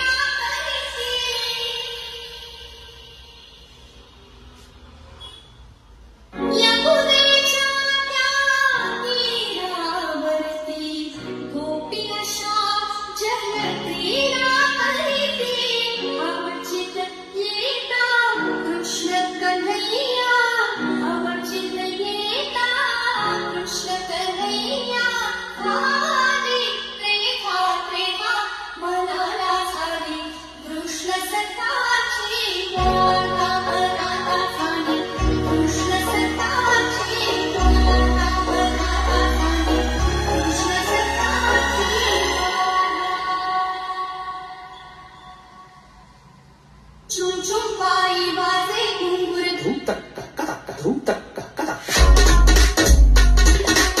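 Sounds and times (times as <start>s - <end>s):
female singing over bass: 29.1s - 44.8s, 52.0s - 54.0s.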